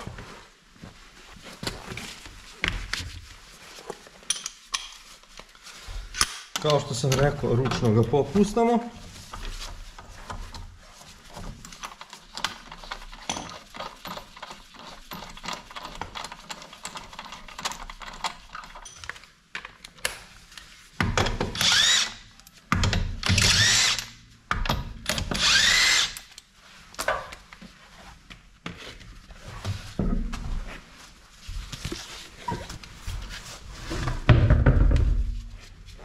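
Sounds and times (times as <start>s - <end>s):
impact wrench whining: 21.5s - 22.2s, 23.2s - 24.1s, 25.2s - 26.2s.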